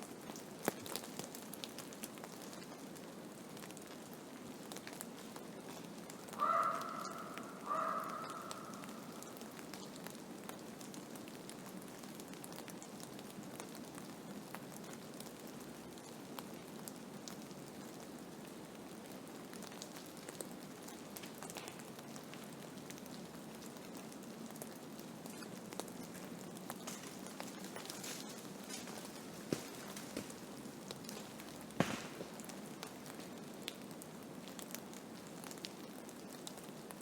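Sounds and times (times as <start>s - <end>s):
snow grains ticking on surfaces: 19.6s - 37.0s.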